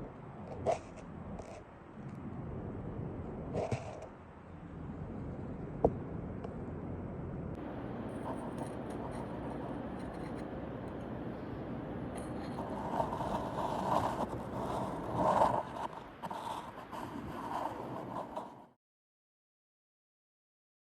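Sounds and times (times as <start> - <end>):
steady background hiss: 0.0 - 18.2
scraping and rubbing: 0.5 - 1.6, 3.6 - 4.1, 8.1 - 11.1, 12.2 - 18.7.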